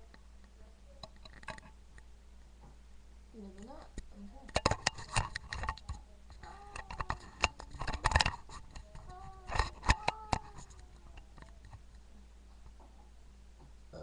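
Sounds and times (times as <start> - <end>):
faint background voice: 5.6 - 7.5, 8.5 - 12.4.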